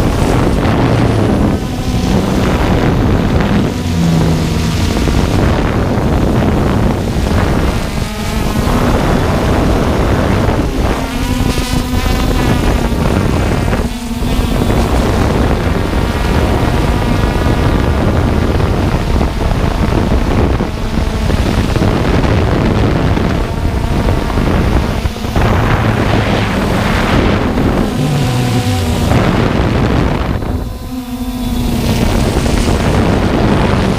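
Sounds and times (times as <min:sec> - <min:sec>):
drone motors humming: 0:00.0 - 0:33.9
wind buffeting microphone: 0:00.0 - 0:33.9.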